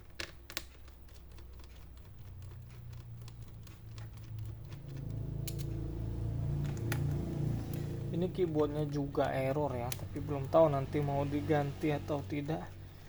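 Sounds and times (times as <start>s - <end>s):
low hum: 3.0s - 13.0s.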